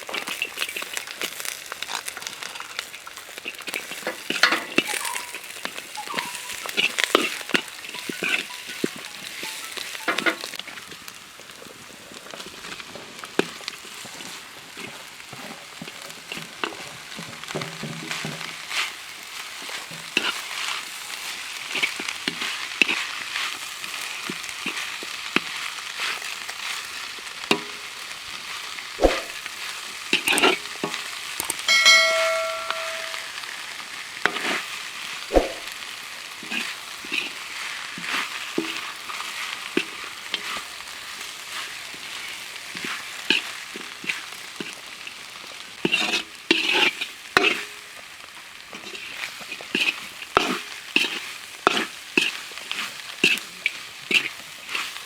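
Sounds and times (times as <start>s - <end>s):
food sizzling in hot pan: 0.0s - 55.0s
metal spatula scraping pan: 3.5s - 10.6s, 45.8s - 47.8s, 48.8s - 53.5s
brief metallic ring: 31.5s - 33.4s.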